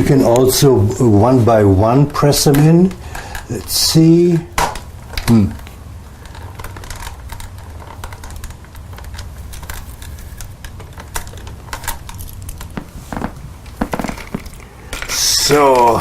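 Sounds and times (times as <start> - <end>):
plastic clicks and rattles: 4.6 - 12.8.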